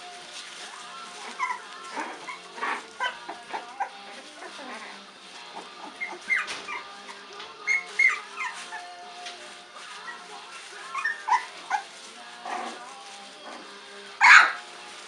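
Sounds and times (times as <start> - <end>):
faint background music: 0.0 - 15.0
puppy whimpering and snuffling: 1.2 - 9.4, 10.0 - 12.8.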